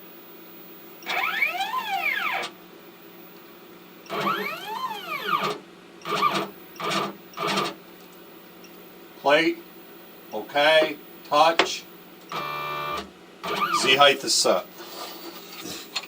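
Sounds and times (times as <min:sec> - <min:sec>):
stepper motors whining: 0:01.0 - 0:02.6, 0:04.1 - 0:07.7, 0:12.3 - 0:14.0.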